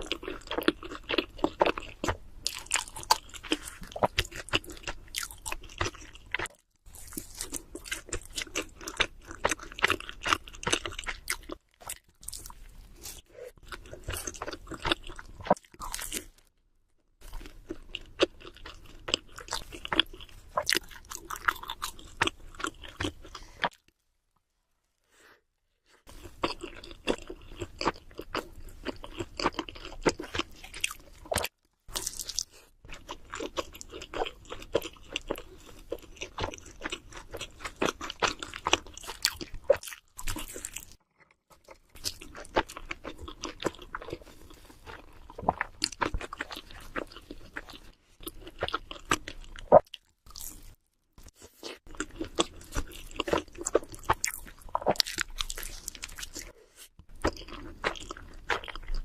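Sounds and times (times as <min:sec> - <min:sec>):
crunchy chewing close up: 0:00.0 - 0:16.5, 0:17.2 - 0:24.0, 0:26.0 - 0:59.0.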